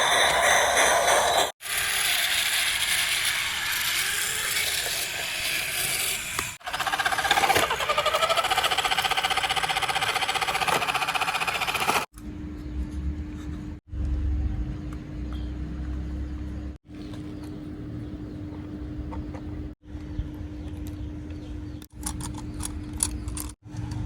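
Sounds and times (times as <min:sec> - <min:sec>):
toy motors whirring and buzzing: 0:00.1 - 0:12.1.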